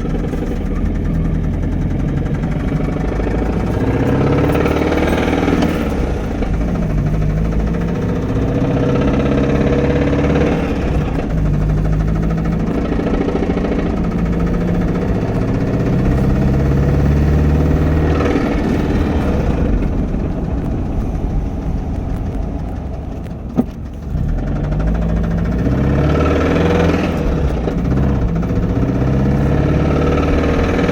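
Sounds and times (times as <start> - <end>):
car engine running: 0.0 - 30.9.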